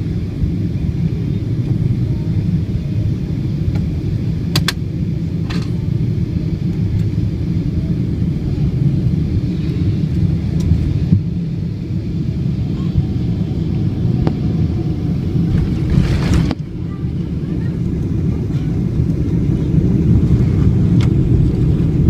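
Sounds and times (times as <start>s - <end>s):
airliner engine rumble: 0.0s - 22.0s.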